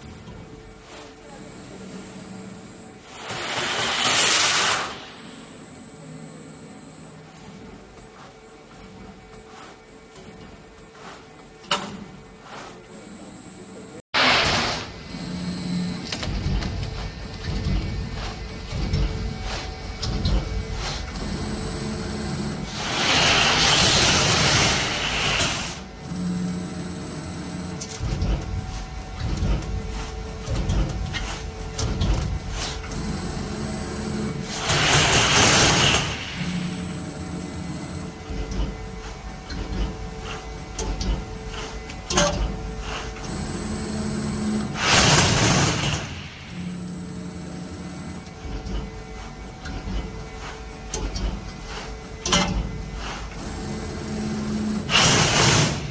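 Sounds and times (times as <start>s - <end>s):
thin high whine: 0.0s - 16.3s, 31.1s - 39.1s
machine low mechanical rumble: 5.2s - 25.2s, 25.8s - 55.9s.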